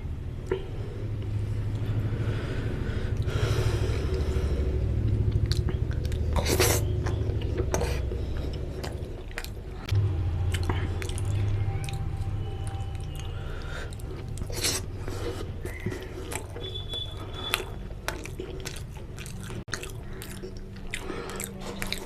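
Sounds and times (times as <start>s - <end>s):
close chewing mouth sounds: 3.1s - 22.0s.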